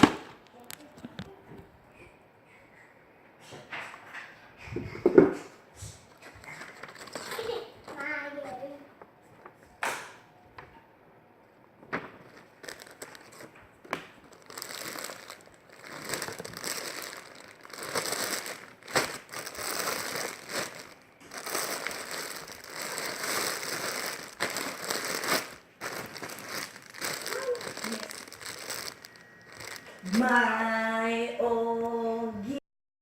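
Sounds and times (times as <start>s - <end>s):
plastic packaging crinkling: 6.2s - 8.0s, 12.0s - 30.5s.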